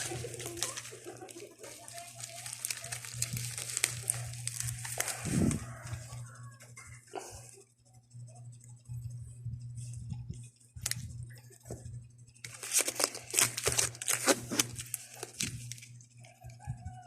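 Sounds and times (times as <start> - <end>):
packaging crinkling and tearing: 0.0 - 6.2, 10.8 - 11.0, 12.4 - 16.0
steady low hum: 0.0 - 17.0
packaging click: 12.5 - 15.8.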